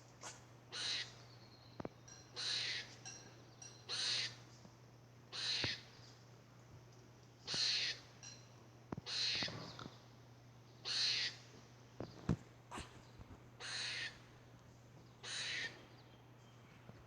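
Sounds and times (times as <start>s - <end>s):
squirrel raspy calls: 0.7s - 1.1s, 2.4s - 2.9s, 3.9s - 4.4s, 5.3s - 5.9s, 7.5s - 8.0s, 9.1s - 9.6s, 10.8s - 11.4s, 13.6s - 14.2s, 15.2s - 15.8s.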